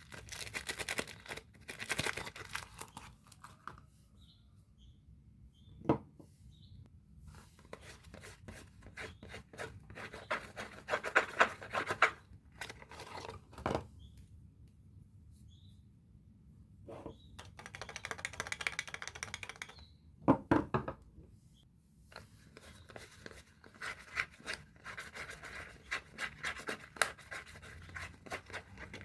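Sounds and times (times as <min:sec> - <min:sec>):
wrapper rustling and tearing: 0:00.0 - 0:03.6.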